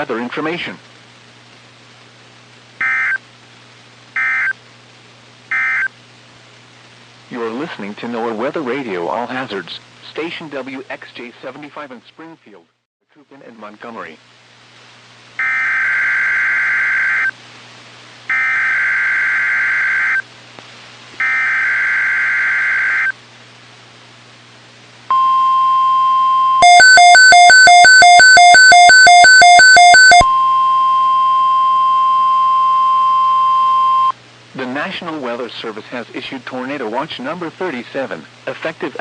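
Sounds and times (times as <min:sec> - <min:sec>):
steady warning alarm tone: 0:18.3 - 0:20.2, 0:21.2 - 0:23.1, 0:25.1 - 0:34.1
warbling data bursts: 0:21.2 - 0:23.1
buzzy pulsing beep: 0:25.1 - 0:34.1.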